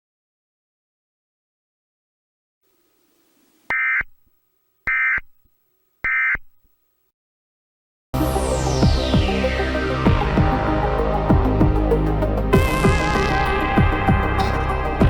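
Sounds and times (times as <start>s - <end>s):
electronic music with falling sweep: 8.2s - 15.0s.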